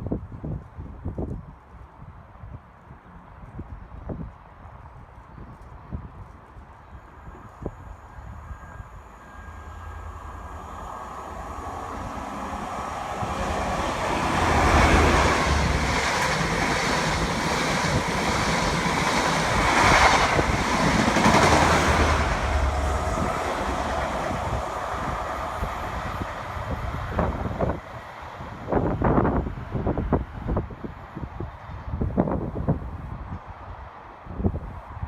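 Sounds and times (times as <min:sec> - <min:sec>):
train rumbling past: 0:06.9 - 0:33.9.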